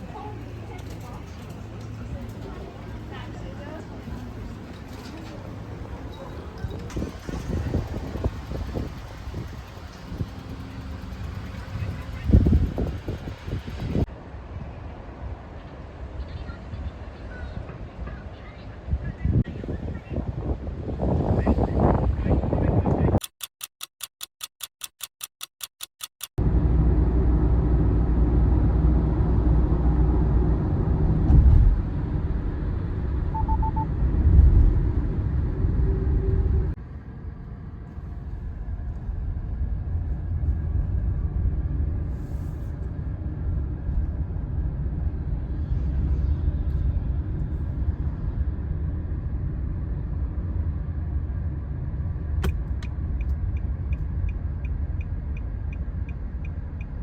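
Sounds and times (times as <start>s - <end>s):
car engine and road noise: 0.0s - 23.4s, 24.4s - 57.0s.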